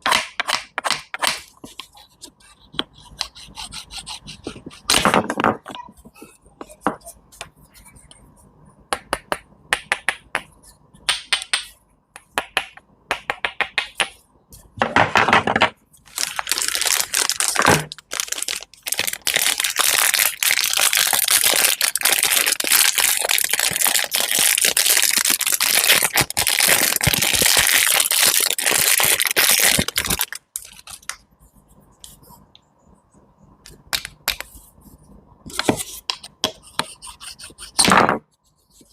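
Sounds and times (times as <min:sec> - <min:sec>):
loud crackling and crushing: 0:16.1 - 0:30.8.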